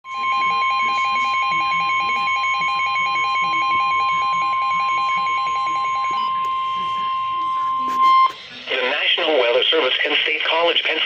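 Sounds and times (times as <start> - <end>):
emergency alert high tone: 0.0 - 8.8
rapid pulsing lower beep: 0.1 - 8.4.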